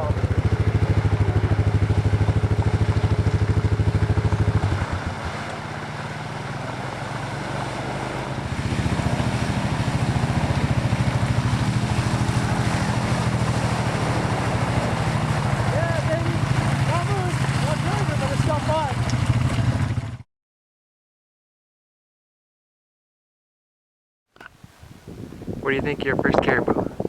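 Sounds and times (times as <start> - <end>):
atv engine running: 0.0 - 20.2.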